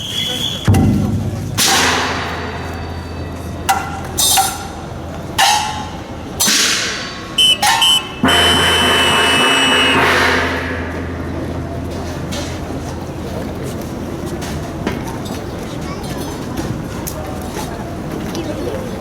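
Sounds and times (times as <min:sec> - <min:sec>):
metallic percussion strikes: 0:00.6 - 0:13.2
high held tone: 0:07.4 - 0:12.0.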